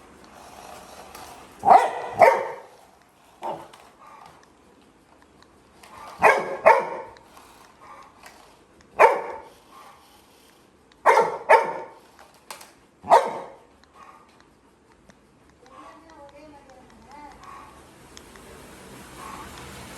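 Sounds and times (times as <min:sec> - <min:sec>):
puppy barking: 0:01.6 - 0:02.8, 0:03.4 - 0:04.3, 0:05.9 - 0:07.2, 0:09.0 - 0:10.0, 0:11.0 - 0:12.0, 0:13.0 - 0:14.3.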